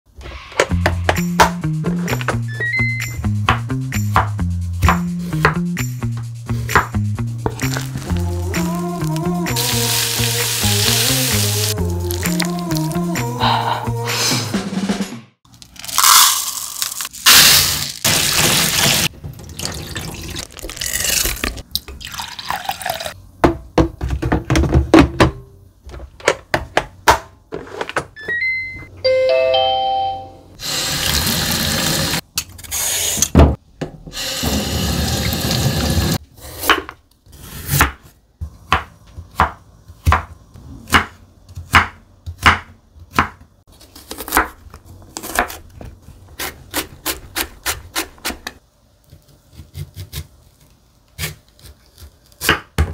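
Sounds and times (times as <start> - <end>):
running tap water hiss: 9.6 - 11.8.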